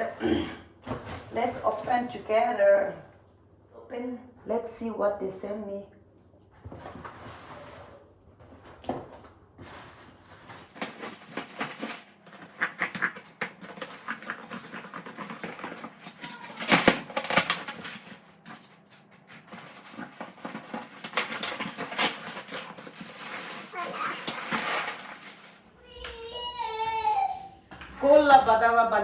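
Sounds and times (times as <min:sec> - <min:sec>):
packaging rustling and clicking: 0:10.4 - 0:25.7.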